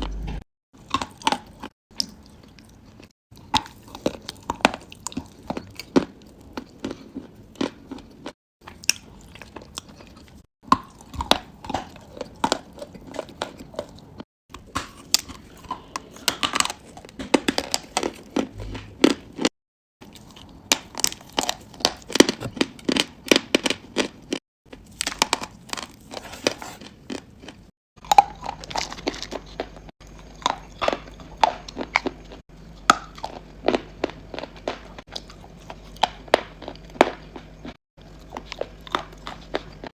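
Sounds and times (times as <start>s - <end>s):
crunchy biting and chewing: 0.8s - 39.9s.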